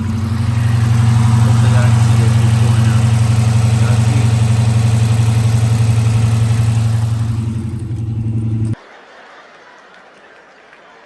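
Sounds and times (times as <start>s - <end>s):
car engine idling: 0.0s - 8.8s.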